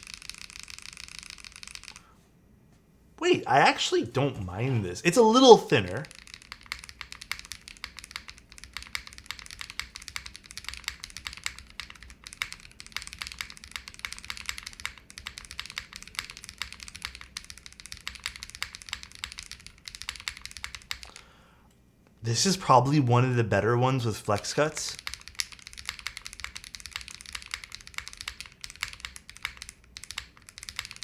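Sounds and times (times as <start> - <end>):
mechanical keyboard typing: 0.0 - 2.1, 5.7 - 21.2, 24.9 - 31.0.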